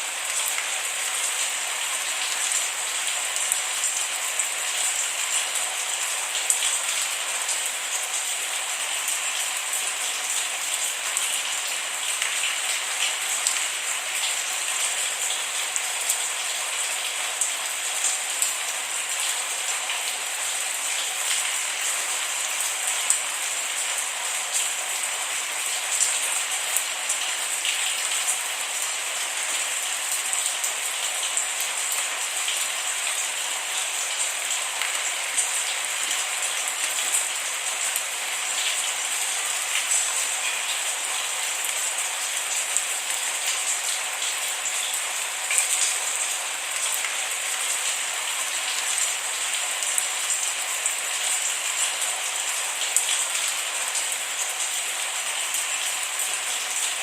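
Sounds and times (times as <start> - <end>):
rain drops ticking on surface: 0.0 - 57.0.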